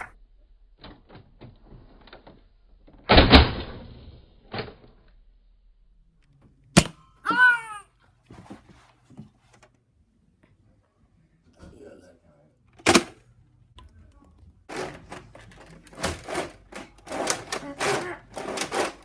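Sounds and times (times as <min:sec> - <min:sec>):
sharp crack: 0:03.0 - 0:04.7
person yelping: 0:07.2 - 0:07.9.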